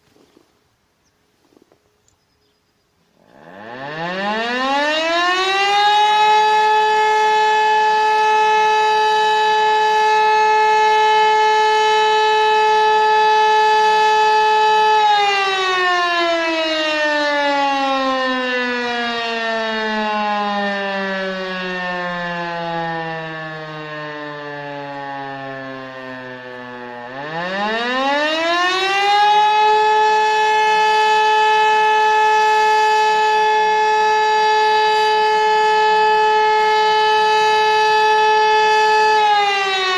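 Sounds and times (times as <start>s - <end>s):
electromechanical siren wailing: 3.2s - 39.9s.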